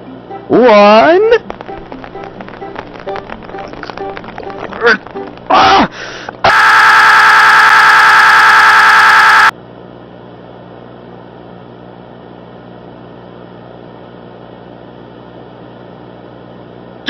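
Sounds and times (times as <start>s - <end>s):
low hum: 1.2s - 9.5s.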